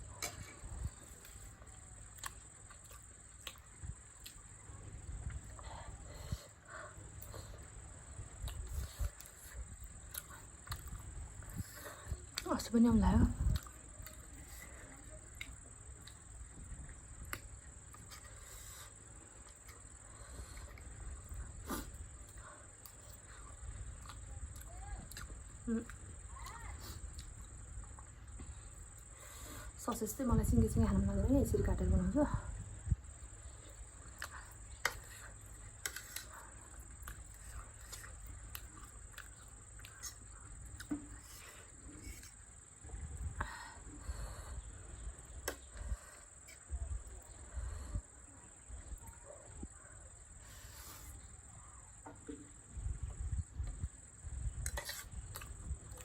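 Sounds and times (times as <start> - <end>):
person chewing: 0.1 - 4.5, 17.2 - 28.1, 33.6 - 42.5, 54.6 - 56.0.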